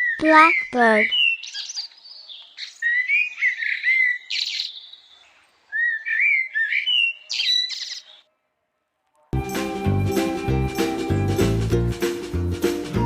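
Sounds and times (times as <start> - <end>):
blackbird singing: 0.0 - 8.2.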